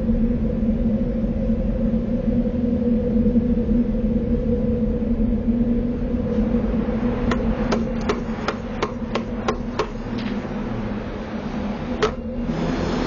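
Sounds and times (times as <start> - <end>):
low hum: 0.0 - 13.0
sharp knocks: 7.3 - 10.2, 12.0 - 12.2.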